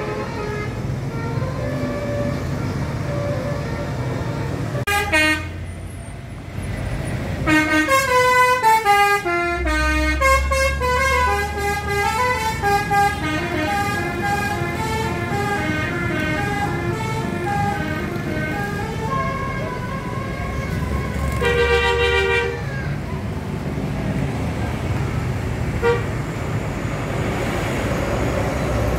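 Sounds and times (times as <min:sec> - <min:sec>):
multi-tone musical air horn: 0:00.0 - 0:05.6, 0:07.4 - 0:22.6, 0:25.8 - 0:26.1
bus engine running: 0:00.0 - 0:28.9.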